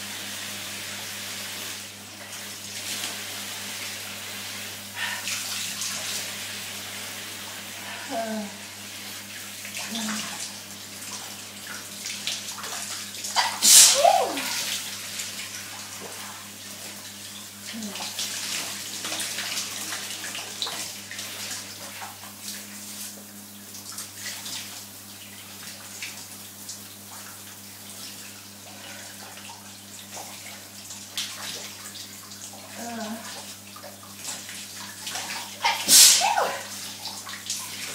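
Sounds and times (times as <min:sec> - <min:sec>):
shower water running: 0:00.0 - 0:37.9
person sneezing: 0:13.4 - 0:14.7, 0:35.6 - 0:36.8.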